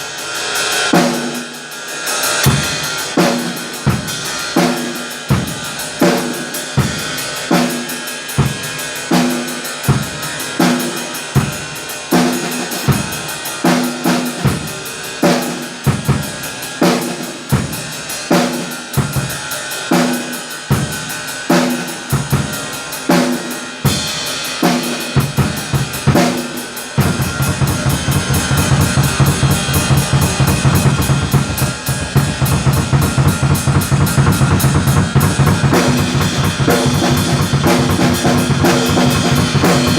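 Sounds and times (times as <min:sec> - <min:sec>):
cymbal: 0:00.0 - 0:39.9
fast low drum strokes: 0:02.4 - 0:07.4, 0:21.8 - 0:39.9
bass drum and snare groove: 0:02.4 - 0:07.8, 0:08.4 - 0:39.9.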